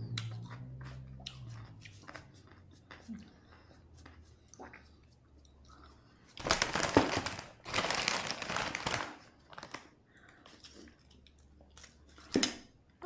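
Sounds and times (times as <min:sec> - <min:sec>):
plastic wrapper crinkling: 0:06.4 - 0:09.9.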